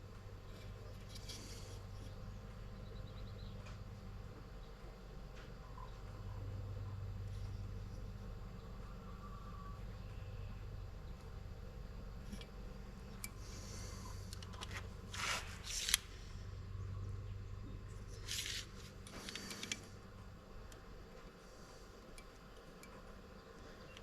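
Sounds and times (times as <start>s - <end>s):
low steady hum: 0.0s - 24.0s
light clicks: 18.3s - 21.4s.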